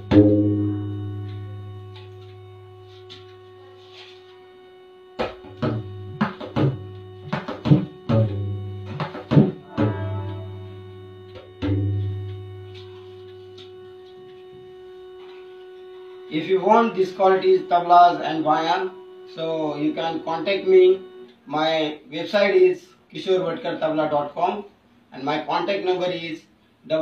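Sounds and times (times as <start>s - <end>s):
tabla bass drum strokes: 0.0s - 4.4s, 5.1s - 15.5s.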